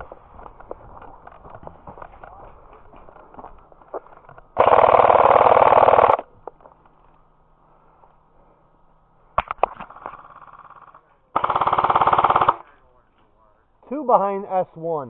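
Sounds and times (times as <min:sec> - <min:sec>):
airsoft gun full-auto bursts: 0:04.6 - 0:06.2, 0:10.0 - 0:12.8.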